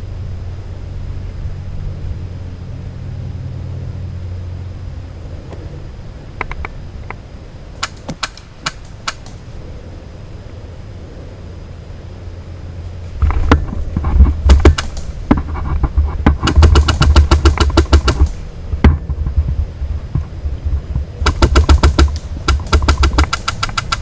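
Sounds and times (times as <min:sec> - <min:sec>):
low rumble: 0:00.0 - 0:07.8, 0:09.0 - 0:24.0
airsoft guns firing: 0:07.8 - 0:09.4, 0:14.4 - 0:15.2, 0:16.3 - 0:18.4, 0:21.2 - 0:24.0.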